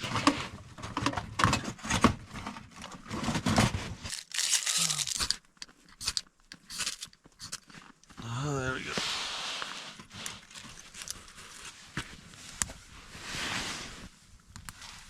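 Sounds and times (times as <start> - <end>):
tinder rustling and tearing: 3.0 - 8.2, 9.6 - 12.2
fire hissing: 8.8 - 10.1.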